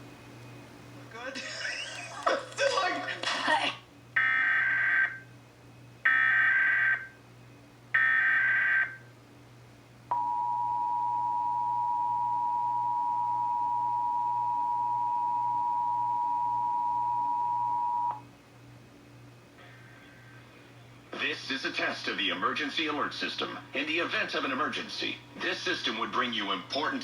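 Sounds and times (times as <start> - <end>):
two-tone attention signal: 10.1 - 18.2.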